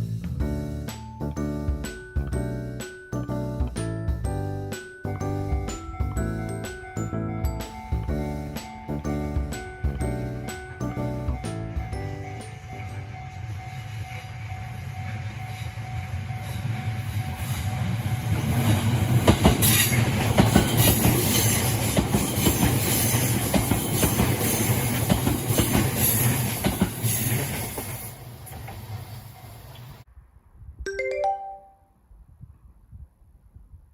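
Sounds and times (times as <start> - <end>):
train rumble: 5.2 - 30.1
wheels clacking over rail joints: 16.6 - 30.0.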